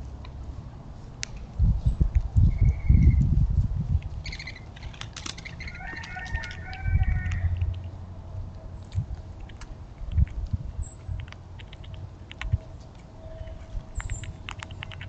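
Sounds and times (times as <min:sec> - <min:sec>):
squirrel eating a nut: 0:04.0 - 0:08.0, 0:08.8 - 0:15.0.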